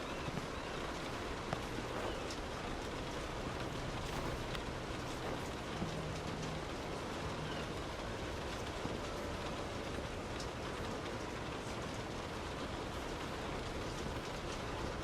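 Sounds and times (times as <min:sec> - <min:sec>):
rain on car roof: 0:00.0 - 0:15.0.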